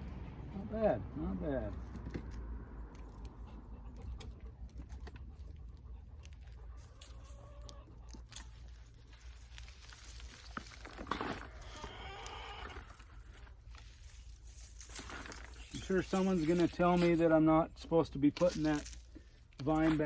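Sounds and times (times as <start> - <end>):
farm animal calling: 5.2 - 8.8, 11.2 - 13.5.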